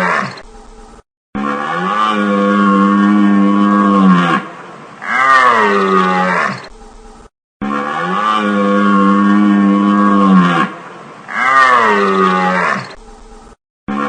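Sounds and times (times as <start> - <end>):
water buffalo mooing: 1.4 - 6.7, 7.6 - 10.7, 11.3 - 13.0.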